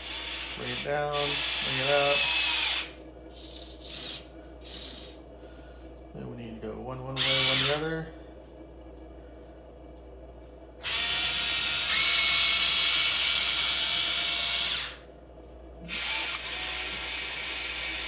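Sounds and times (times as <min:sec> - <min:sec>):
electric gear motors whining: 0:00.0 - 0:05.2, 0:07.2 - 0:08.1, 0:10.8 - 0:15.0, 0:15.8 - 0:18.0.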